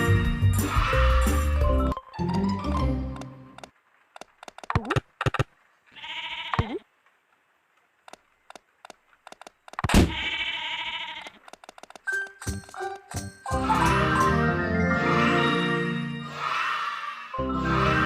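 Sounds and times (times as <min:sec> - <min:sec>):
cartoon animal bleating: 0:00.6 - 0:01.6, 0:05.9 - 0:06.8, 0:10.0 - 0:11.4, 0:16.3 - 0:18.0
sharp clicks: 0:03.2 - 0:05.5, 0:07.8 - 0:10.2, 0:11.2 - 0:12.4.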